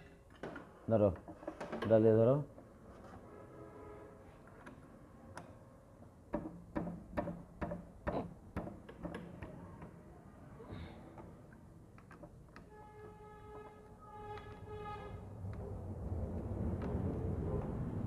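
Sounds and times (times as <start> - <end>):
hand tools clicking and tapping: 11.2 - 12.7.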